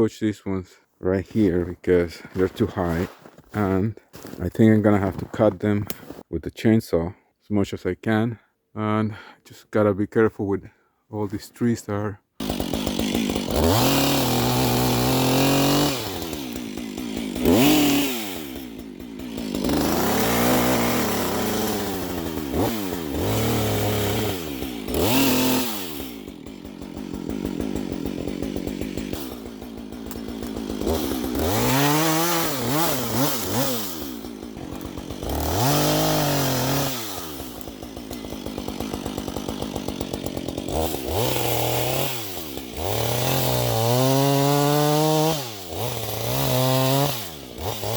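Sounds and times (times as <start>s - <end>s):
chainsaw cutting wood: 1.3s - 6.2s, 12.4s - 47.9s.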